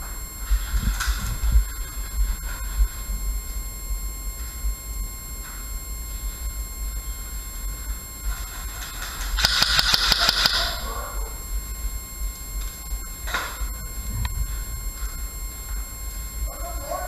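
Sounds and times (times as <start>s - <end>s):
low steady rumble: 0.0s - 17.0s
airsoft rifle full-auto burst: 9.2s - 11.0s.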